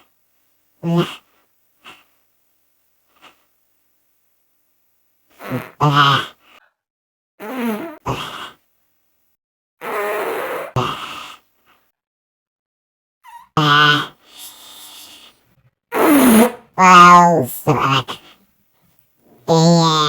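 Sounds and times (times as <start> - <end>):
fart sound effects: 5.4 - 6.3, 7.4 - 8.0, 9.8 - 10.9, 15.9 - 18.0.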